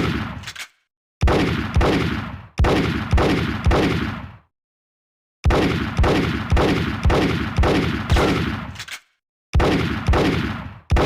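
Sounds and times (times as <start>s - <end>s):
revolver gunshots echoing: 0.0s - 0.6s, 1.2s - 4.4s, 5.4s - 8.8s, 9.6s - 11.0s.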